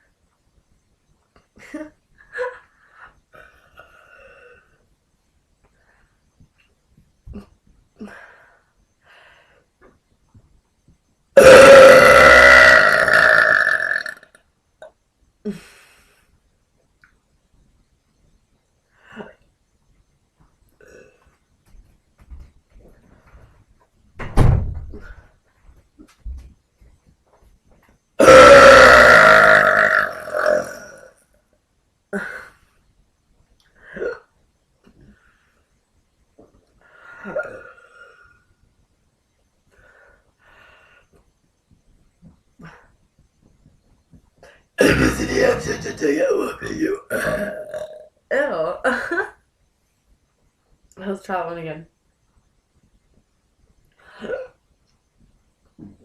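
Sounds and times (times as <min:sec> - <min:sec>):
woman burping: 0:11.4 - 0:14.3, 0:28.2 - 0:31.1, 0:37.3 - 0:38.1, 0:44.8 - 0:49.2, 0:54.2 - 0:54.6.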